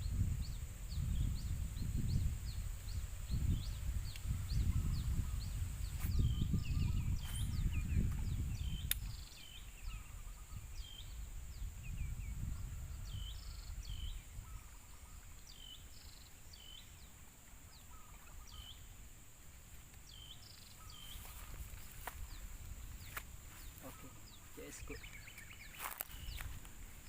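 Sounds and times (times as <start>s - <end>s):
bird chirping: 0.0s - 27.0s
insect drone: 0.0s - 27.0s
sharp click: 8.8s - 9.2s.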